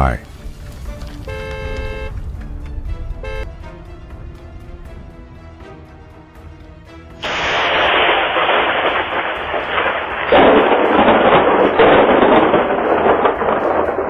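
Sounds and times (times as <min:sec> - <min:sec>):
thunder crack and rumbling: 0:07.2 - 0:14.0.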